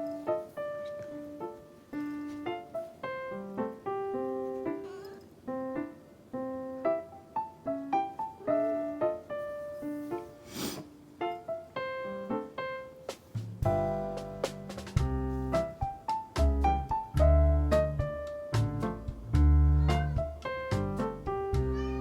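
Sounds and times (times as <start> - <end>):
piano music: 0.0 - 22.0
burst of hiss: 10.4 - 11.0.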